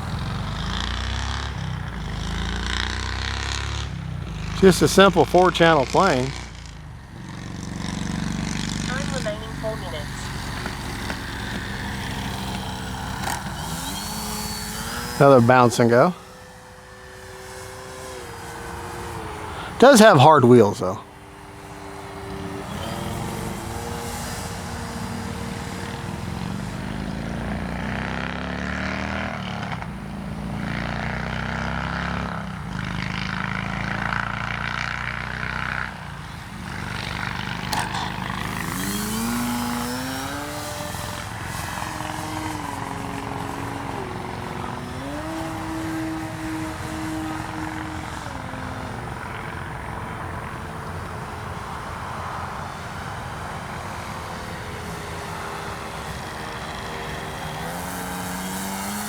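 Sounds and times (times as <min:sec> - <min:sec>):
electric model plane motor whine: 0:08.0 - 0:19.9, 0:21.1 - 0:32.8, 0:36.4 - 0:59.0.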